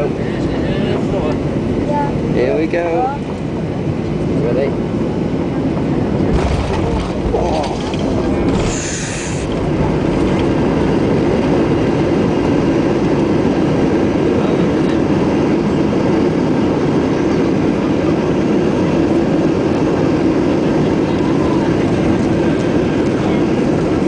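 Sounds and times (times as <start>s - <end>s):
jet engines roaring: 0.0s - 24.0s
rush of air: 6.2s - 13.9s.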